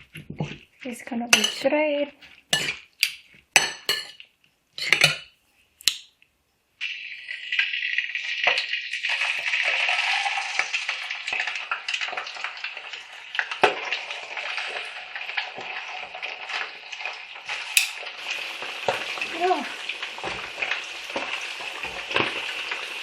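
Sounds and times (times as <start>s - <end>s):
dishes clinking: 1.3s - 1.6s, 2.6s - 4.2s, 4.8s - 5.3s, 17.8s - 18.0s
fish frying in hot oil: 6.8s - 23.0s
oil popping and crackling: 6.8s - 23.0s.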